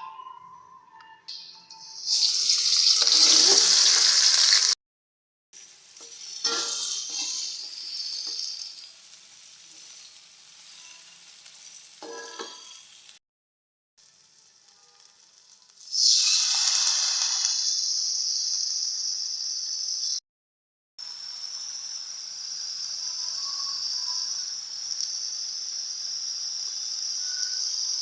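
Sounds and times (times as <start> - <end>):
food sizzling in hot oil: 1.3 - 4.8, 5.6 - 13.2, 14.0 - 20.2, 21.0 - 28.0
spatula scraping a pan: 1.8 - 4.6, 6.0 - 8.9, 12.0 - 12.9.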